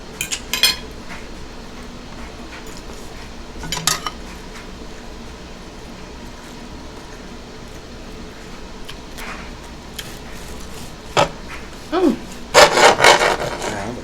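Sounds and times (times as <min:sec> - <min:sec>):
utensils clinking against a dish: 0:00.2 - 0:01.2, 0:03.6 - 0:04.6, 0:12.6 - 0:14.0.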